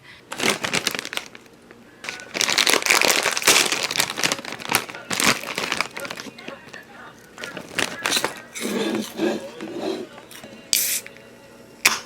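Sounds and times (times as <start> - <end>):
plastic packaging crinkling: 0.3 - 9.7.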